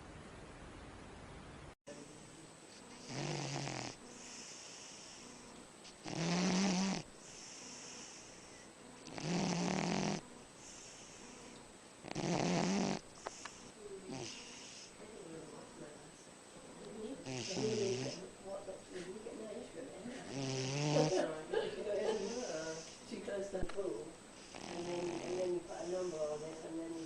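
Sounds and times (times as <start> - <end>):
animal snoring: 3.0 - 15.0, 17.2 - 18.2, 20.2 - 21.3, 22.1 - 23.1, 24.4 - 27.0
soft breathing: 3.9 - 6.0, 7.1 - 8.9, 10.6 - 11.7, 13.0 - 15.3, 17.0 - 20.4, 24.3 - 27.0.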